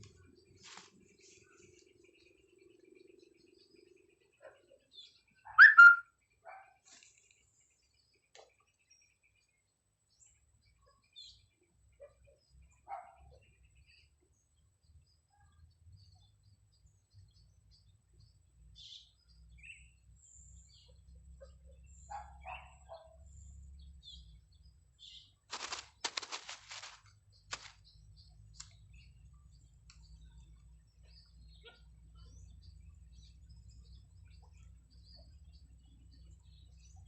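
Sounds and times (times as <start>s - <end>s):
small birds chirping: 0.0s - 37.0s
sharp clicks and rustles: 25.5s - 27.9s.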